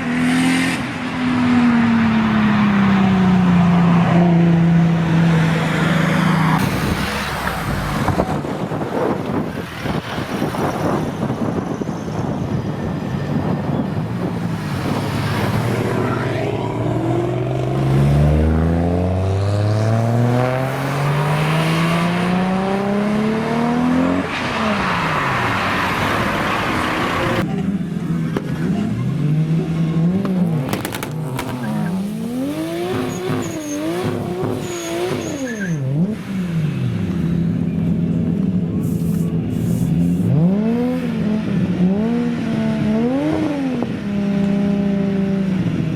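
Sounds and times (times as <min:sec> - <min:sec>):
car engine accelerating and revving: 0:13.4 - 0:45.9.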